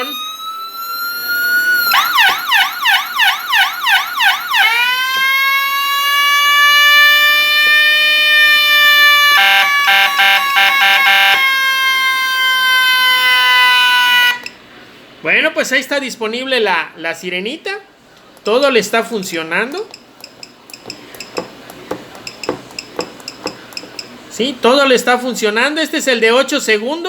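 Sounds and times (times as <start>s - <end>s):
electronic siren cycling tones: 0.0s - 14.5s.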